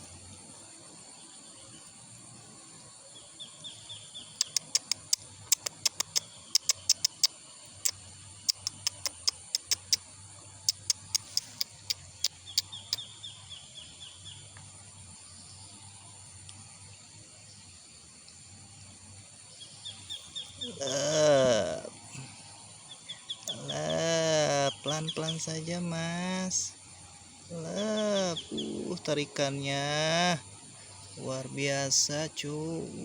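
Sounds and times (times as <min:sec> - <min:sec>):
sharp irregular clicks: 0:04.4 - 0:10.0, 0:10.7 - 0:13.0
soft rapid ticks: 0:04.4 - 0:10.1, 0:10.7 - 0:13.0.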